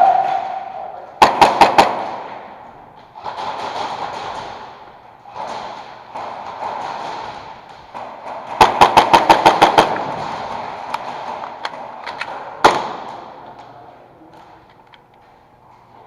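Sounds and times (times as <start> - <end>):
sharp loud crack: 0.0 - 2.6
airsoft gun shots: 1.2 - 2.6, 3.2 - 11.9, 12.6 - 13.3.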